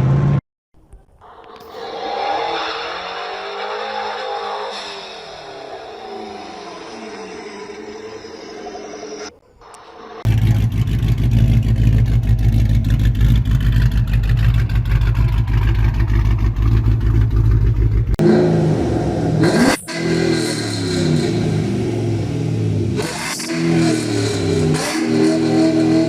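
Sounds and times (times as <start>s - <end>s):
engine revving: 1.2s - 26.0s
car exhaust rumbling: 10.2s - 23.2s.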